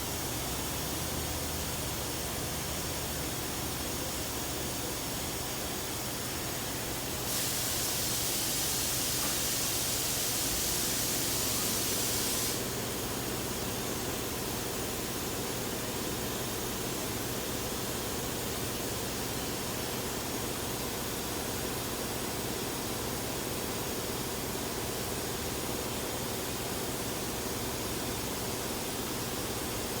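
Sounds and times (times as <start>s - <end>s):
loud hiss: 7.2s - 12.8s.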